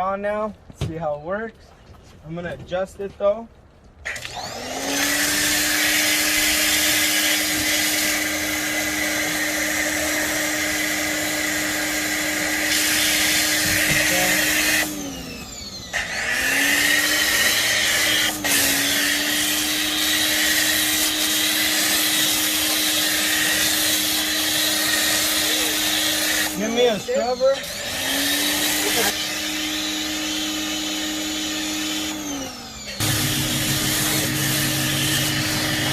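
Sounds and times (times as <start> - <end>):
pressure washer motor hum: 4.1 - 35.9
water spray hissing: 17.0 - 29.3, 33.0 - 35.9.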